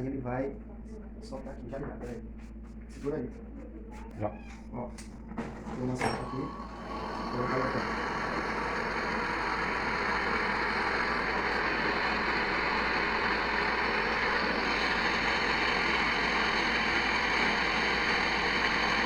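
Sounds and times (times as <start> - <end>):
heat gun blowing: 6.6 - 19.0.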